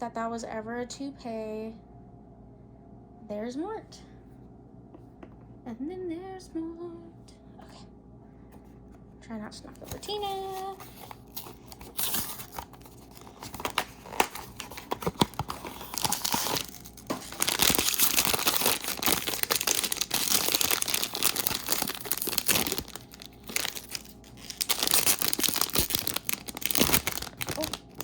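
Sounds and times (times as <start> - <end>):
cardboard tearing: 9.8 - 28.0
wrapper crinkling: 9.8 - 28.0.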